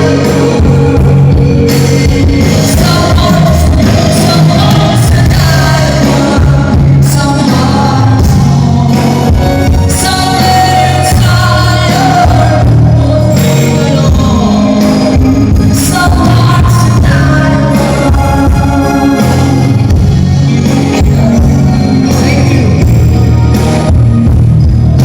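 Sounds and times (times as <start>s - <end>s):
man singing loudly: 0.0s - 19.9s
musical accompaniment: 0.0s - 25.0s.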